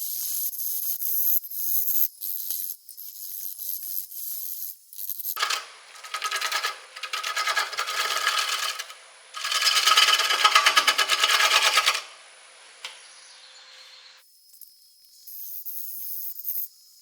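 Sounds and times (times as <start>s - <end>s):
gouge cutting wood on lathe: 5.4s - 13.0s
lathe running hum: 5.4s - 14.1s.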